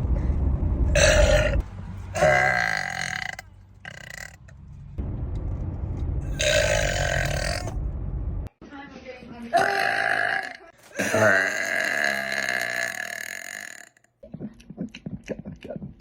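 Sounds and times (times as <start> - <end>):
low rumble: 0.0 - 8.5
woman belching: 1.0 - 1.6, 2.2 - 4.4, 6.3 - 7.7, 9.5 - 14.0.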